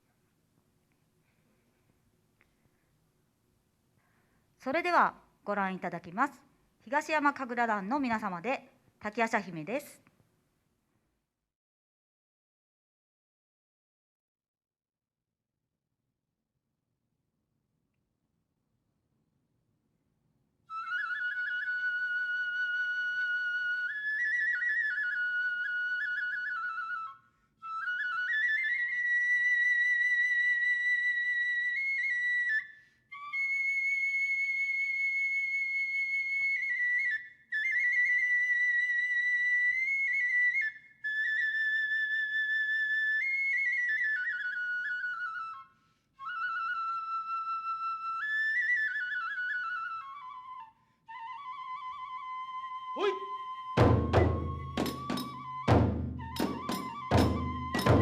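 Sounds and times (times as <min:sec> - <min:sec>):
bamboo flute playing high notes: 0:20.7 - 0:58.0.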